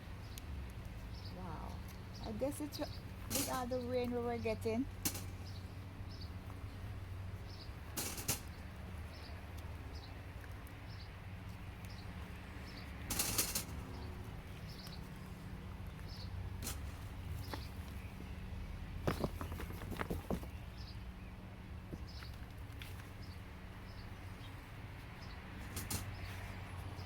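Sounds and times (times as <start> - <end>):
bird chirping: 11.8 - 13.0, 13.8 - 16.4.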